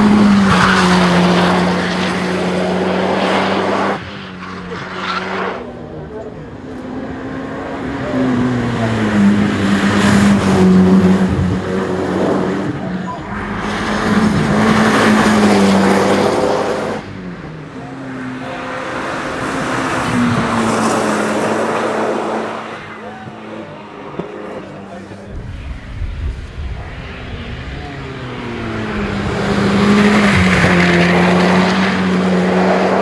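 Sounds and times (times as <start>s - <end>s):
turbocharged car engine revving: 0.0s - 33.0s.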